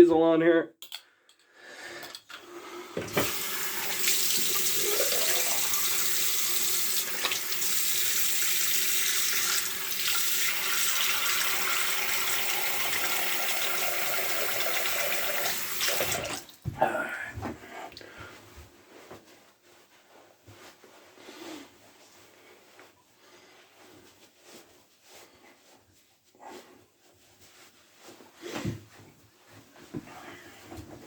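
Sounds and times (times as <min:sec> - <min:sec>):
sink tap running: 0:03.1 - 0:16.6.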